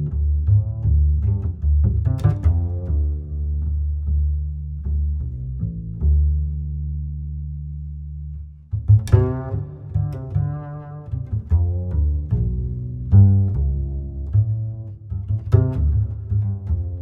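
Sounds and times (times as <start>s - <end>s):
held deep bass note: 0.0s - 17.0s.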